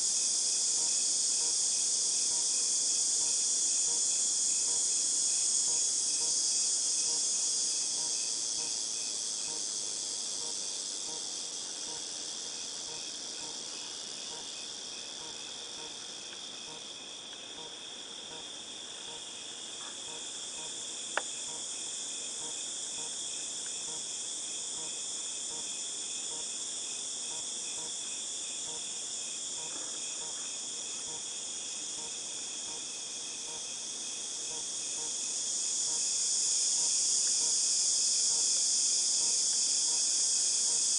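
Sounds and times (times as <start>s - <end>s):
cicadas droning: 0.0s - 40.9s.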